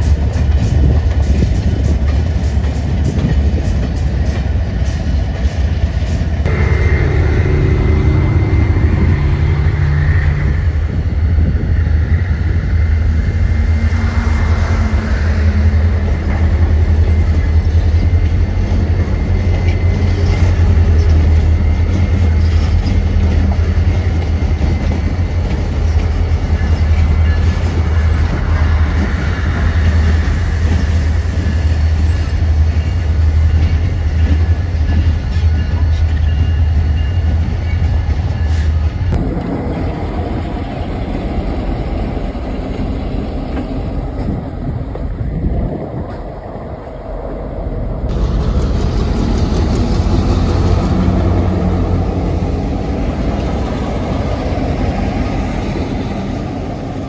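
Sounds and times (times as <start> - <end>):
train rumbling by: 0.0 - 57.0
pitched tones: 6.5 - 10.9.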